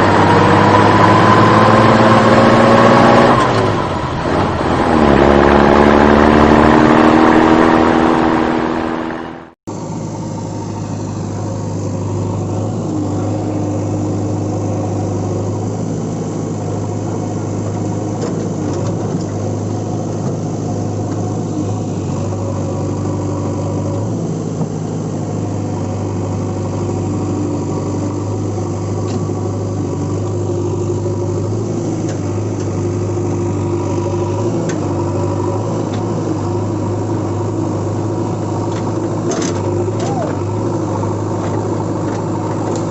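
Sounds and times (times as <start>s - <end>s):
engine running loudly: 0.0s - 42.9s
engine idling: 9.3s - 42.9s.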